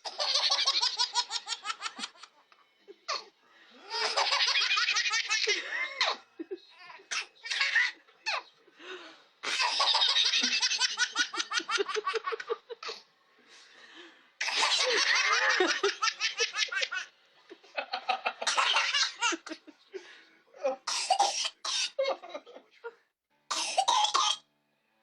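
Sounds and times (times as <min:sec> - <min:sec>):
baby laughing: 0:00.0 - 0:02.3, 0:03.9 - 0:08.5, 0:09.4 - 0:12.6, 0:18.0 - 0:19.6.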